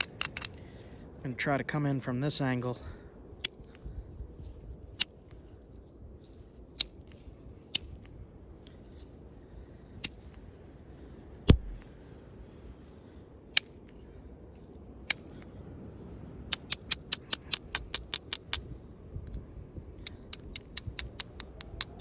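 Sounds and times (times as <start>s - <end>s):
stone clicking on stone: 0.0s - 0.6s, 3.4s - 9.1s, 12.8s - 15.5s, 16.5s - 18.7s, 20.0s - 22.0s
light ticks of flaking stone: 0.0s - 1.4s, 2.4s - 11.9s, 12.6s - 22.0s.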